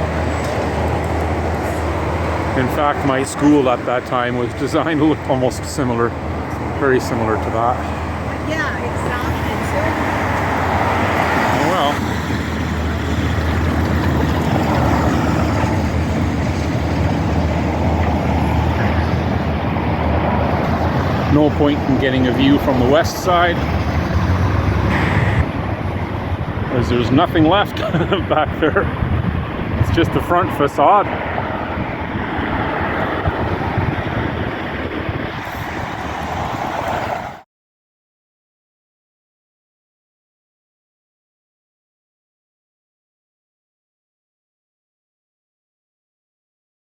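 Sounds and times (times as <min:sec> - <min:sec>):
road noise: 0:00.0 - 0:37.4
vehicle engine rumble: 0:00.0 - 0:37.4
wind buffeting microphone: 0:00.0 - 0:37.4.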